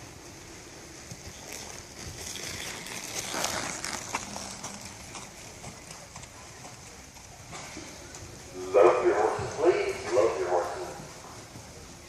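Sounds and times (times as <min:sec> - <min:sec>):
horse hoofbeats on arena ground: 0:00.0 - 0:12.0
steady background hiss: 0:00.0 - 0:12.0
faint voices: 0:04.2 - 0:12.0.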